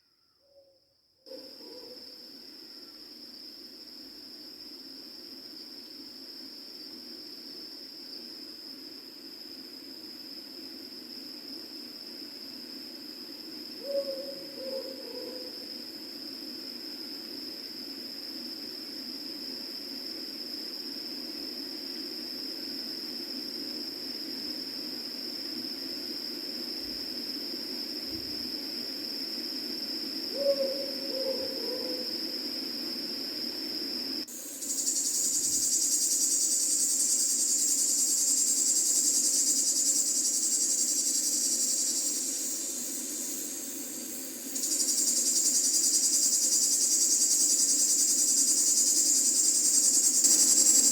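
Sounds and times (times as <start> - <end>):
crickets chirring: 0.0 - 50.9
high insect trill: 0.0 - 50.9
owl hoot: 13.8 - 15.6, 30.3 - 32.1.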